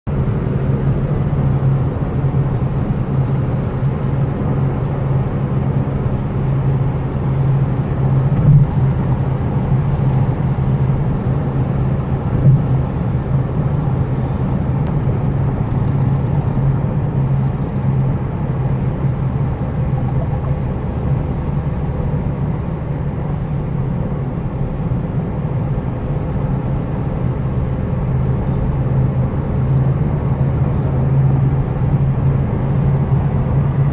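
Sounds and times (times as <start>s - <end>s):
road and engine noise: 0.1s - 33.9s
low grinding drone: 0.2s - 23.7s.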